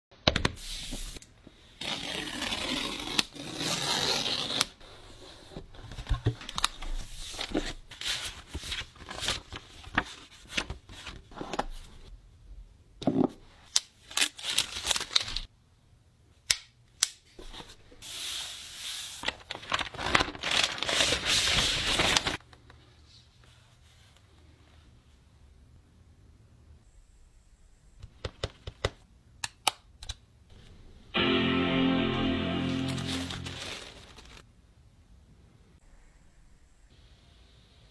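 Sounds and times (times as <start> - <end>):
packaging tearing and peeling: 1.8 - 4.8, 33.2 - 34.4.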